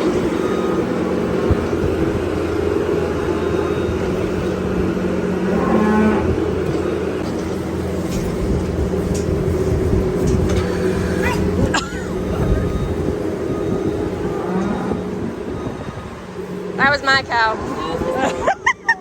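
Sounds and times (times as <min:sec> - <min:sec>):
skid loader engine droning: 0:00.0 - 0:19.0
cow mooing: 0:05.4 - 0:06.8, 0:13.8 - 0:15.3.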